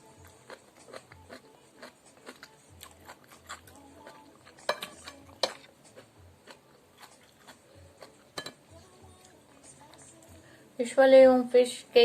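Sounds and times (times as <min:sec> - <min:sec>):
utensils clicking against dishes: 0:04.5 - 0:05.7.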